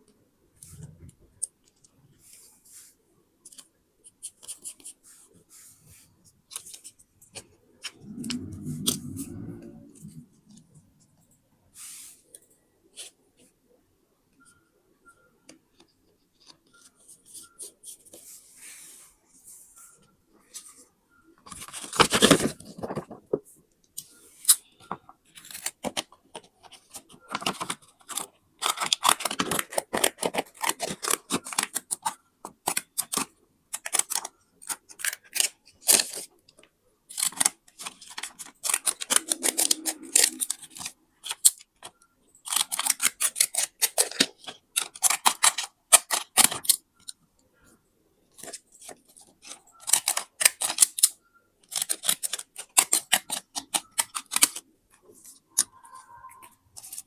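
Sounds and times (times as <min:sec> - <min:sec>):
scissors cutting paper: 0:26.7 - 0:36.3, 0:37.1 - 0:41.7, 0:42.4 - 0:46.8, 0:48.4 - 0:51.1, 0:51.7 - 0:54.6.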